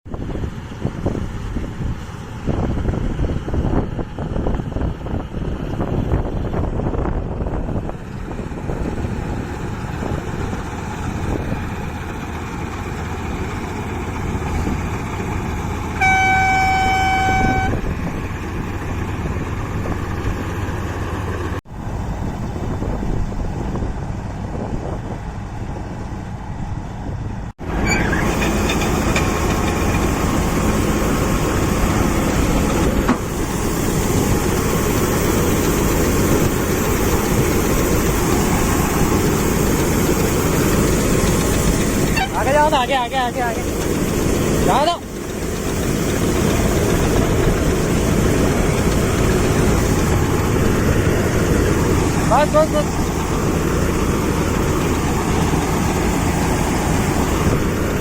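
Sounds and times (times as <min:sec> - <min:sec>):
farm machinery engine running: 0:00.1 - 0:58.0
horn blast: 0:15.9 - 0:18.0, 0:42.0 - 0:42.6.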